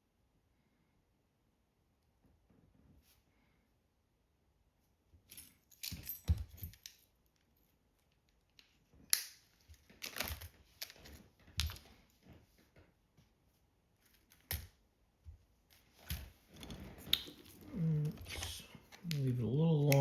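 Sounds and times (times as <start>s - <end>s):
small parts clicking and rustling: 5.2s - 12.4s, 14.0s - 14.8s, 15.7s - 20.0s.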